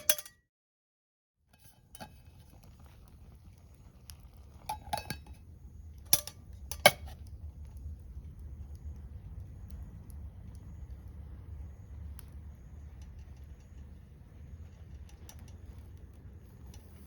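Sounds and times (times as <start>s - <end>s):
cookware clinking together: 0.0s - 0.3s
low steady rumble: 1.6s - 17.0s.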